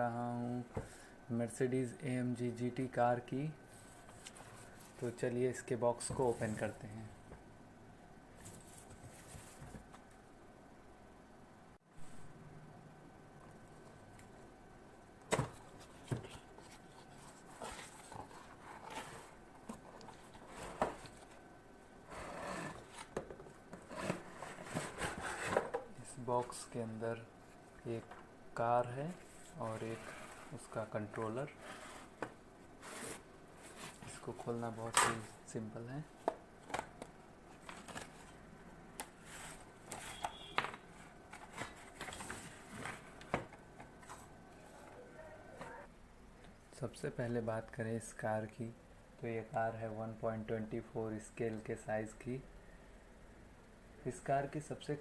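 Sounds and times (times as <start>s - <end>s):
cardboard packaging rustling: 39.2s - 44.3s.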